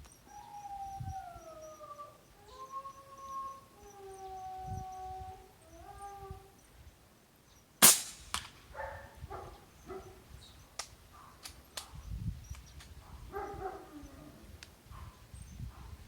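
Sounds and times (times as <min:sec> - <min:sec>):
dog whining: 0:00.3 - 0:06.6
air rifle shot: 0:07.8 - 0:08.7.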